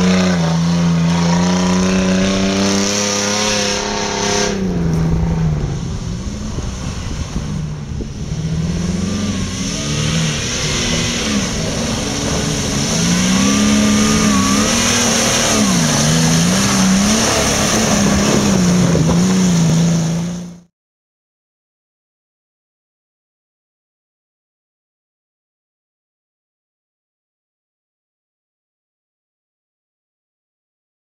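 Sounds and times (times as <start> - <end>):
engine revving: 0.0 - 20.7.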